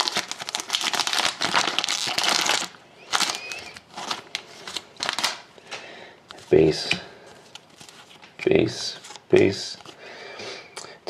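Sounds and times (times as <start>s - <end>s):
wrapper crinkling: 0.0s - 5.5s, 7.3s - 10.0s.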